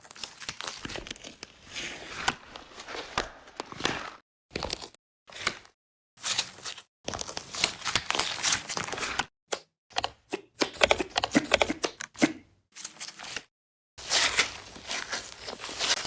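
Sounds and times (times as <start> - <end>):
crinkly material tearing: 0.0 - 1.8.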